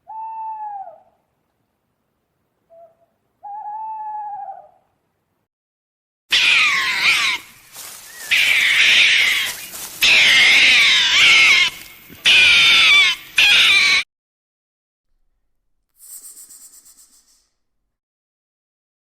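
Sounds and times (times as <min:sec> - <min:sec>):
animal wavering cries: 0:02.7 - 0:04.9, 0:06.3 - 0:14.0.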